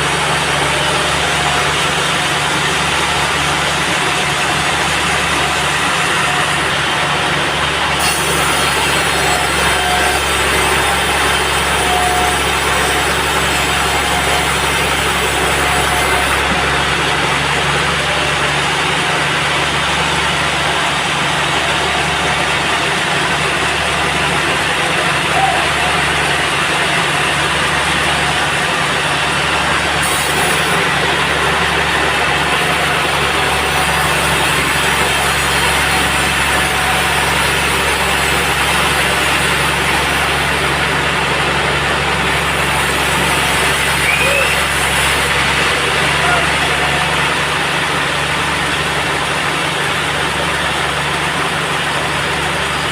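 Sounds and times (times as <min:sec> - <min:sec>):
sawmill machinery running: 0:00.0 - 0:52.9.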